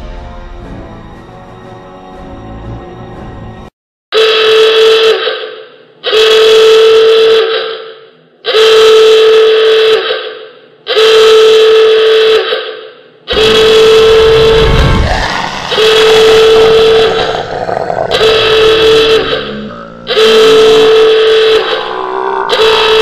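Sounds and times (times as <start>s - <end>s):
music: 0.0s - 3.7s
long steady horn blasts: 13.3s - 14.5s, 18.1s - 23.0s.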